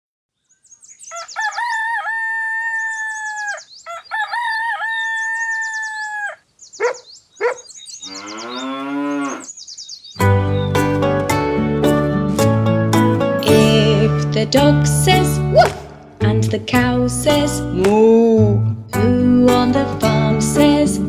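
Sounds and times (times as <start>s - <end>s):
high bird chirping: 0.3s - 1.9s, 2.5s - 10.9s
rooster crowing: 1.1s - 6.4s
low drawn-out animal call: 5.5s - 9.5s.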